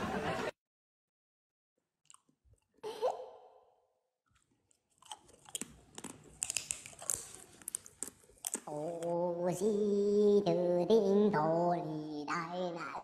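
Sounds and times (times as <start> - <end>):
crisp crunching and clicking: 4.3 - 9.2.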